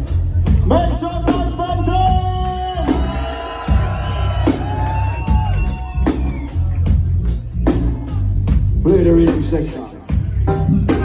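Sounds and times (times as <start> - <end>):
live reggae band playing: 0.0 - 11.0
crowd whooping and cheering: 2.4 - 8.3.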